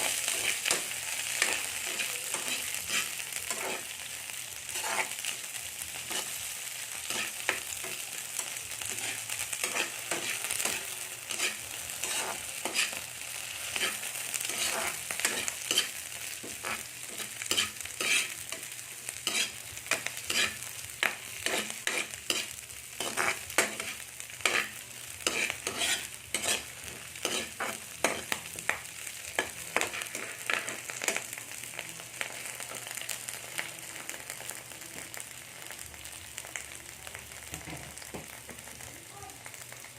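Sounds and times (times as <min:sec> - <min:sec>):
utensil scraping a pan: 0:00.0 - 0:03.9, 0:04.7 - 0:05.2, 0:08.9 - 0:13.0, 0:13.6 - 0:18.4, 0:19.2 - 0:28.4
squid sizzling in a pan: 0:00.0 - 0:39.9.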